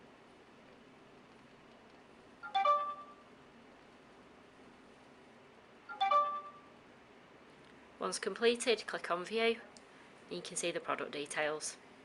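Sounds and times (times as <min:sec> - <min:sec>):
smartphone electronic chime: 0:02.4 - 0:03.3, 0:05.9 - 0:06.7.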